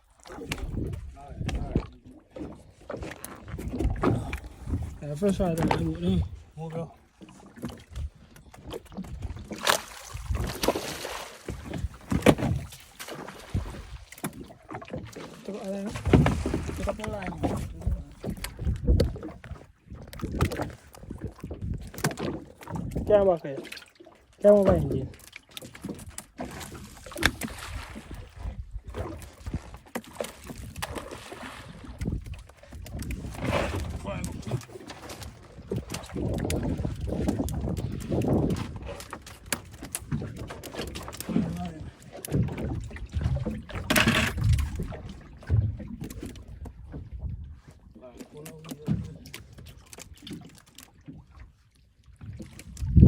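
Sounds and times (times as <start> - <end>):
water splashing: 0.0 - 47.3
wind noise: 0.5 - 1.9, 16.0 - 19.3, 36.0 - 39.0, 52.3 - 53.0.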